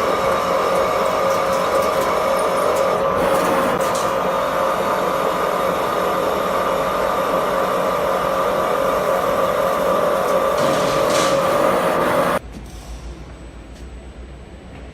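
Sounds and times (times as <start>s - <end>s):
lathe machine whining: 0.0s - 12.4s.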